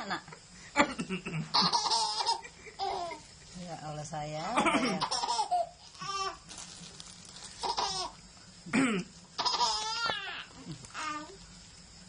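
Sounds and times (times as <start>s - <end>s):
small child laughing: 1.5s - 3.2s, 4.7s - 5.7s, 9.4s - 10.4s
man coughing: 8.7s - 9.1s.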